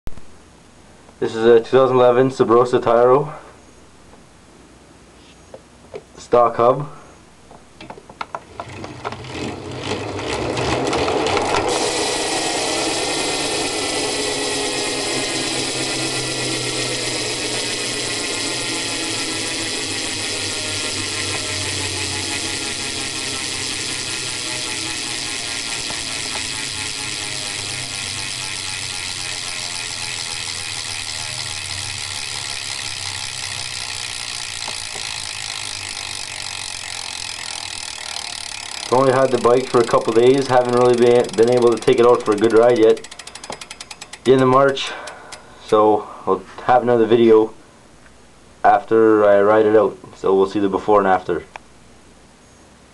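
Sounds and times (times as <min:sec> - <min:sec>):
bike hub clicking: 0:07.8 - 0:46.0.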